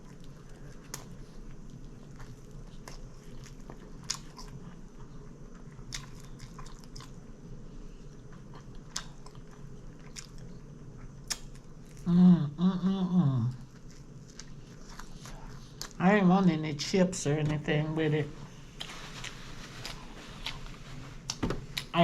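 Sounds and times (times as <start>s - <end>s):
close chewing with mouth clicks: 0.0s - 12.1s, 13.5s - 16.0s
person humming mm: 12.0s - 13.6s.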